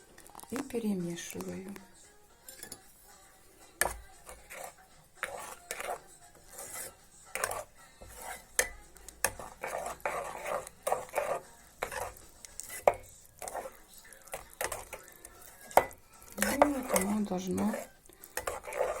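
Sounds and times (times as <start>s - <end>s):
spoon scraping a pot: 2.4s - 19.0s
spoon knocking against a pot: 14.3s - 17.2s.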